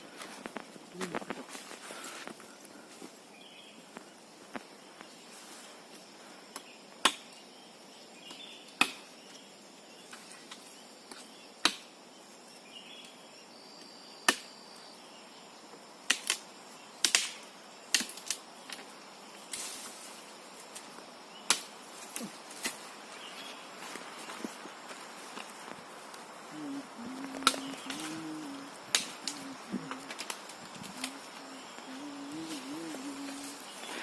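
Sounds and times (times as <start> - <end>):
insects buzzing: 0.0 - 34.0.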